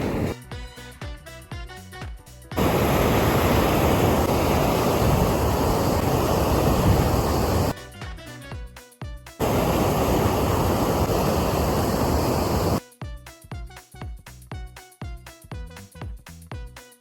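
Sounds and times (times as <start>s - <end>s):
fast-flowing river rushing: 2.6s - 7.7s, 9.4s - 12.8s.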